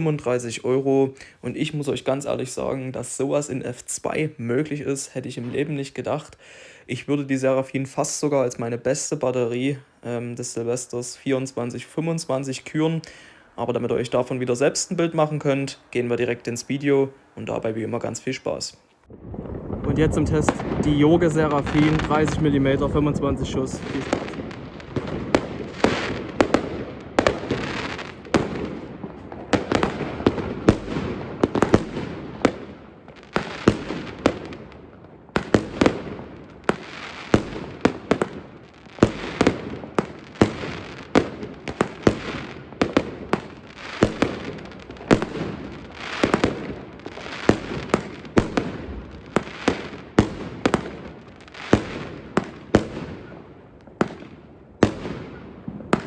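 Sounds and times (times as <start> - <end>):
firework crackle and hiss: 19.2 - 56.0
firework launches: 19.3 - 34.7.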